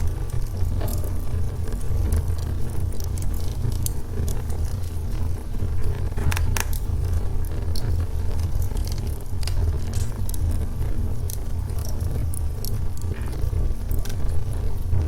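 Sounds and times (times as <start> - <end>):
low rumble of fire: 0.0 - 15.0
wood fire crackling: 0.0 - 15.0.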